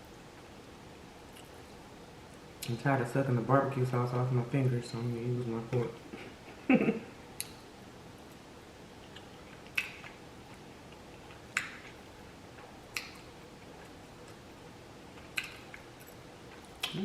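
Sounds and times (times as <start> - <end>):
close-up eating sounds: 7.4 - 17.0.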